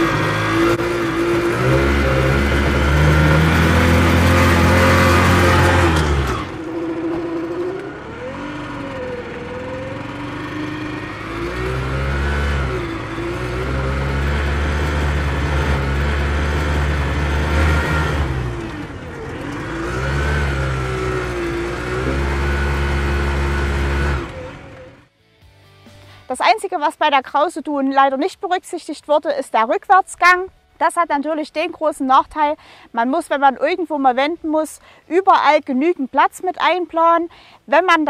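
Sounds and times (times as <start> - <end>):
moped engine running: 0.0 - 25.1.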